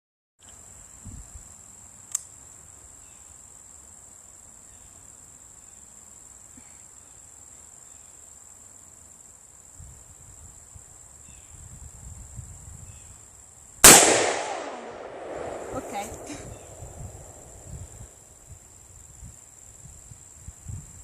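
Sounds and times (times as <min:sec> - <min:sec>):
insects trilling: 0:00.4 - 0:13.8, 0:14.6 - 0:21.0
sharp click: 0:02.1 - 0:02.3.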